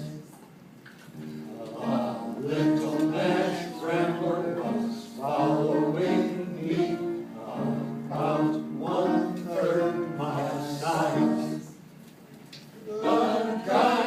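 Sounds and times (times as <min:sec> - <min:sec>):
musical accompaniment: 0:01.2 - 0:11.9
choir singing: 0:01.5 - 0:11.8, 0:12.8 - 0:14.0.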